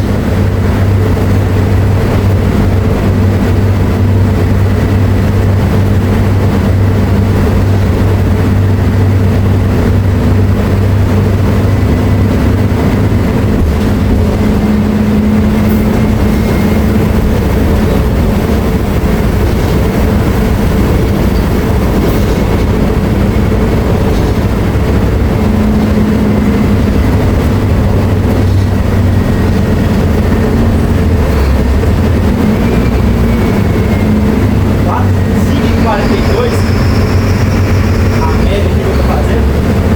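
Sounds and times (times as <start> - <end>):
bus diesel engine droning: 0.0 - 39.9
faint high whine: 32.5 - 39.5.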